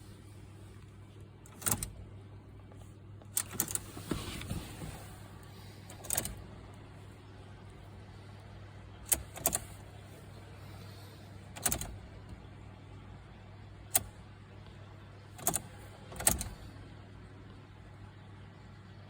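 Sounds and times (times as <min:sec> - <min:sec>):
steady low hum: 0:00.0 - 0:19.0
car ignition clicks: 0:01.5 - 0:02.0, 0:03.2 - 0:04.4, 0:05.9 - 0:06.4, 0:09.0 - 0:09.8, 0:11.5 - 0:12.1, 0:13.9 - 0:14.1, 0:15.4 - 0:16.6.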